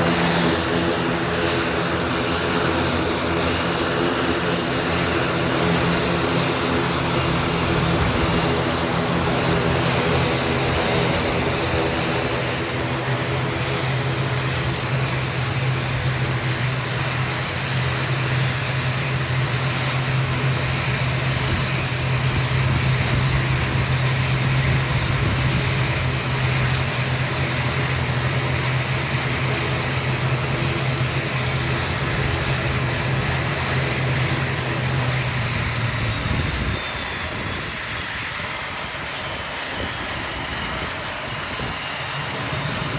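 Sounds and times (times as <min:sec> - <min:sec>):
broad rushing noise: 0:00.0 - 0:17.5
propeller drone: 0:00.0 - 0:42.9.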